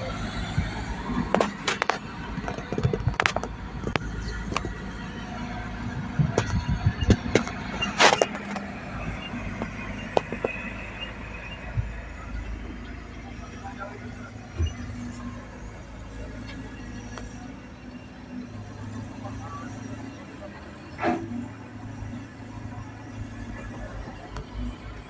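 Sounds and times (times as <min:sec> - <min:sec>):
heavy diesel machinery running: 0:00.0 - 0:25.0
scraping clatter: 0:06.2 - 0:08.8.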